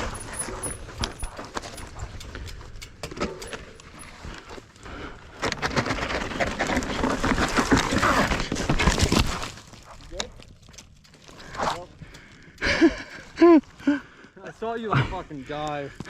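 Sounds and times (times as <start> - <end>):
bike clicks and knocks: 0.0 - 9.2
bike tyres crunching on dirt: 0.0 - 12.6.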